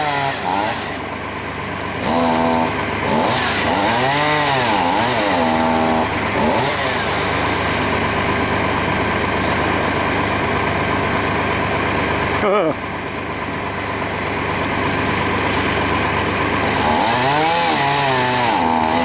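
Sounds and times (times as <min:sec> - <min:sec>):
chainsaw engine revving: 0:00.0 - 0:01.2, 0:01.8 - 0:09.3, 0:14.4 - 0:19.0.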